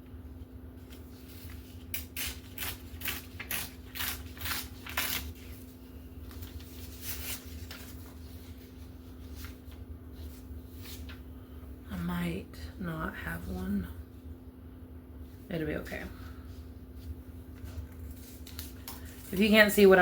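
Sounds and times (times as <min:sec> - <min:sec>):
paper rustling: 0:00.8 - 0:11.5, 0:16.9 - 0:20.0
paper tearing: 0:01.2 - 0:08.2.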